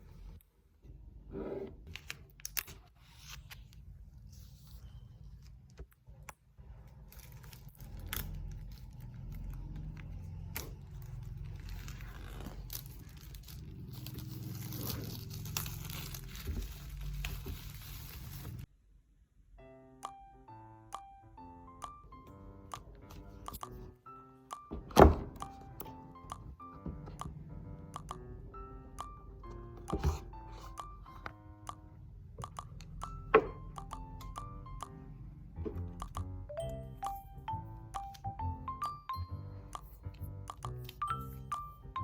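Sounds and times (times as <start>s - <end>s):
packaging crinkling and tearing: 7.0s - 9.7s, 10.5s - 18.6s.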